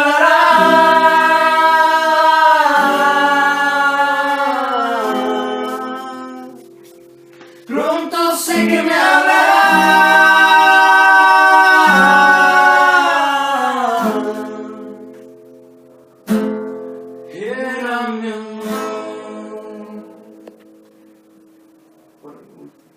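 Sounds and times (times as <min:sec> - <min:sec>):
man singing long notes: 0:00.0 - 0:06.7, 0:07.7 - 0:15.0, 0:17.3 - 0:20.3
strummed acoustic guitar: 0:00.0 - 0:22.9.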